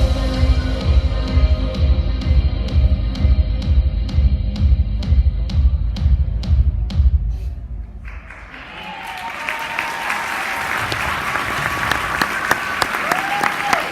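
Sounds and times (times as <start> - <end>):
dance music with heavy beat: 0.0 - 7.8
audience applause: 8.0 - 13.9.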